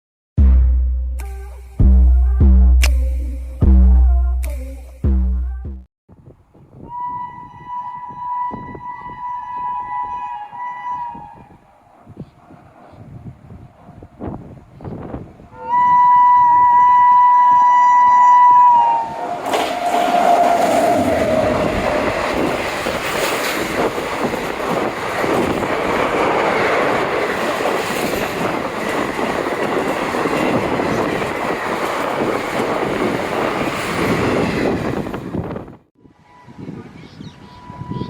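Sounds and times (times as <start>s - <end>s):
shrill locomotive horn: 6.8s - 11.6s, 15.5s - 22.7s, 36.0s - 38.0s
train wheels rumbling on rails: 19.1s - 35.8s.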